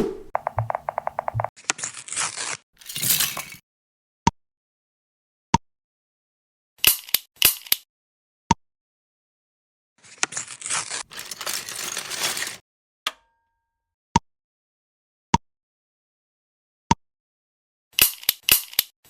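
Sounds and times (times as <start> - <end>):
sharp clicks: 0.0 - 1.5
packaging being torn open: 10.6 - 12.6.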